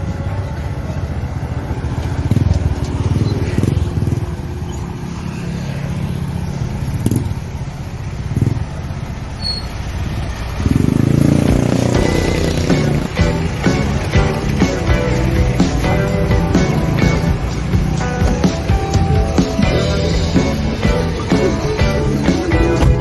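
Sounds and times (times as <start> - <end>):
vehicle engine running: 0.0 - 23.0.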